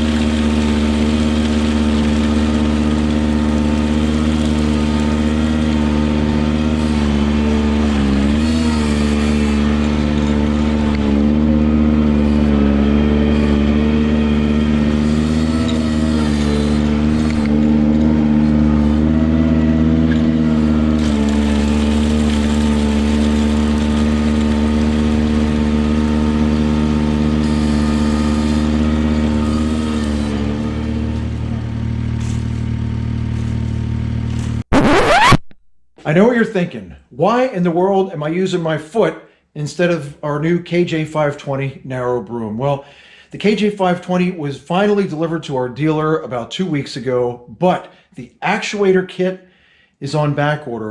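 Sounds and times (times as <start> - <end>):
tractor engine running: 0.0 - 34.8
power rake through gravel: 0.0 - 35.0.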